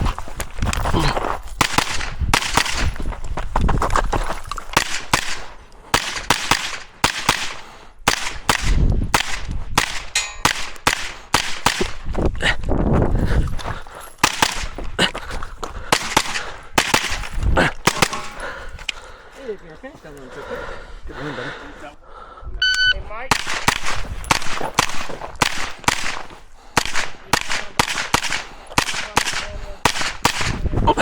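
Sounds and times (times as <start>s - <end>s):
carbine gunshots: 1.6s - 3.0s, 4.7s - 12.1s, 14.2s - 14.8s, 15.8s - 18.4s, 23.3s - 30.7s.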